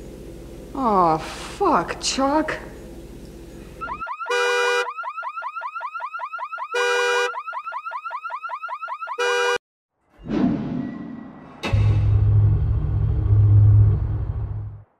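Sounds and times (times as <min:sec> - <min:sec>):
electronic alarm siren warbling: 0:03.8 - 0:09.6
loud steady blaring tone: 0:03.8 - 0:09.6.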